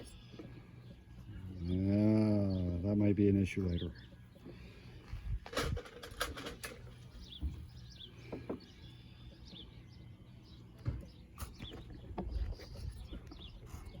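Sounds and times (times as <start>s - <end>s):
faint low hum: 0.0s - 14.0s
small birds chirping: 0.0s - 14.0s
clicks and knocks of parts: 5.4s - 7.0s.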